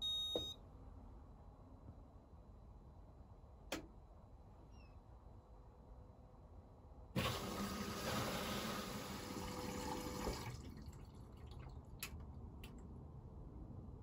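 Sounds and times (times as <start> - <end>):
water rushing through valve: 7.2 - 11.8.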